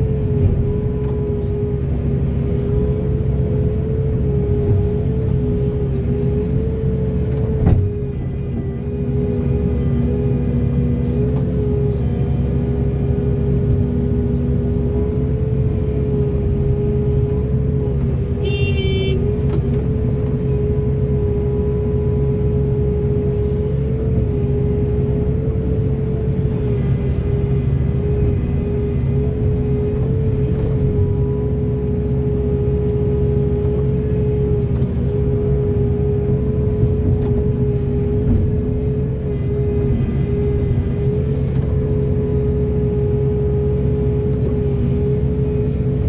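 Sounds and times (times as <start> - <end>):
constant whine: 0.0 - 46.0
diesel engine drone: 0.0 - 46.0
short high-pitched tone: 18.4 - 19.2.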